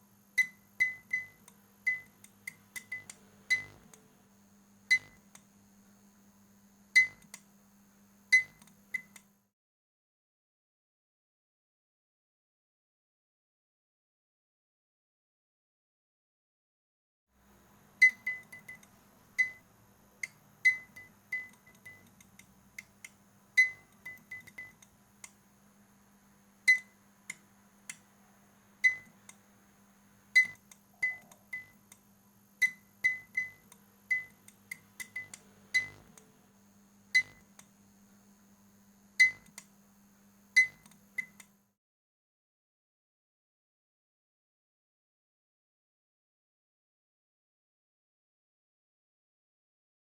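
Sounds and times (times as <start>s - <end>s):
steady low hum: 0.0s - 9.2s, 17.4s - 41.5s.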